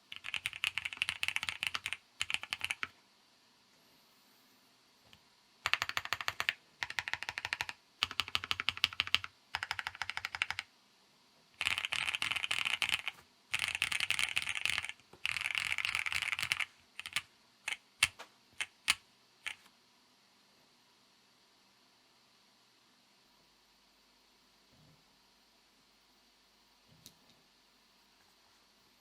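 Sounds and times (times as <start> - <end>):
mechanical keyboard typing: 0.1 - 3.0, 5.6 - 10.7, 11.6 - 19.6.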